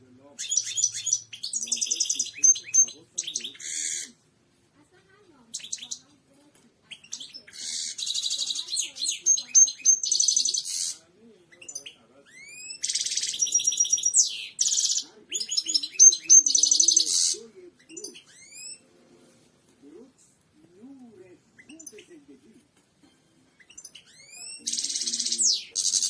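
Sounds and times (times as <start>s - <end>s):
goldfinch twittering song: 0.4s - 4.1s, 6.9s - 11.0s, 11.6s - 18.8s, 23.6s - 26.0s.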